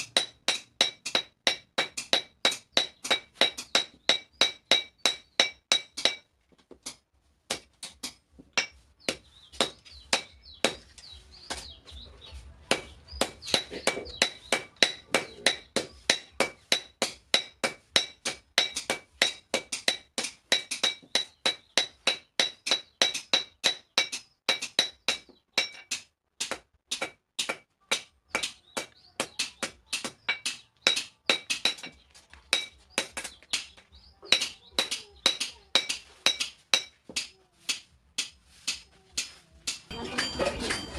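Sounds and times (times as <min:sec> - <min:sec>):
hammer striking steel on anvil: 0:00.0 - 0:06.3, 0:06.9 - 0:10.8, 0:12.7 - 0:40.9.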